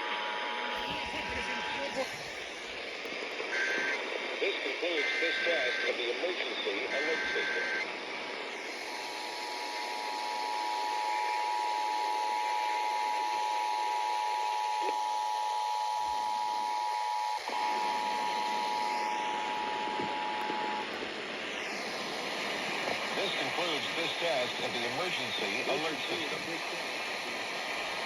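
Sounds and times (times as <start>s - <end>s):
two-tone attention signal: 3.5s - 4.0s
steady hiss: 17.8s - 28.0s.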